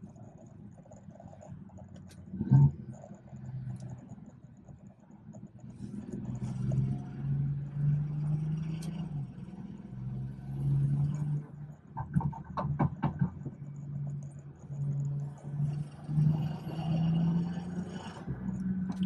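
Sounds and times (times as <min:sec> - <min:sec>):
car engine droning: 0:00.0 - 0:19.0
sharp popping sounds: 0:11.9 - 0:15.7.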